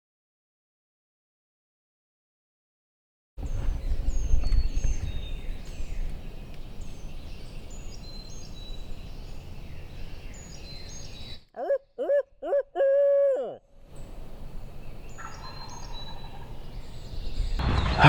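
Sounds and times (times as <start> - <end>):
wind rumble on microphone: 3.4 - 11.3, 14.9 - 18.0
songbirds singing: 3.4 - 18.0
owl hooting: 11.0 - 13.7.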